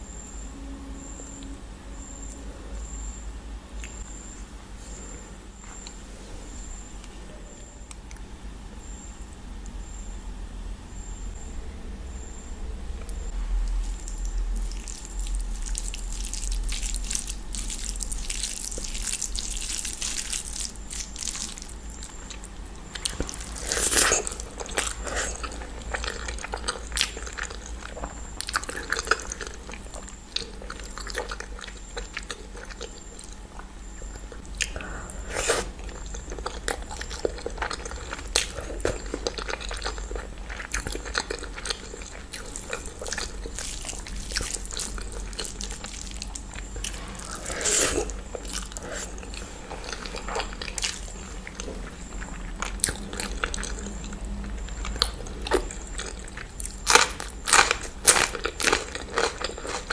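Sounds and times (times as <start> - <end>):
person chewing wetly: 13.0 - 59.9.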